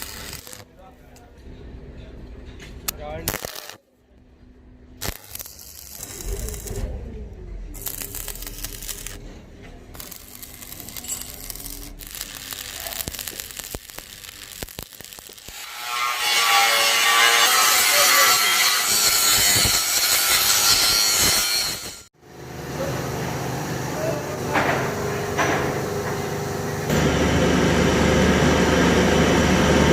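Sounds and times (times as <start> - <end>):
power tool running: 0.0 - 0.6, 25.9 - 29.9.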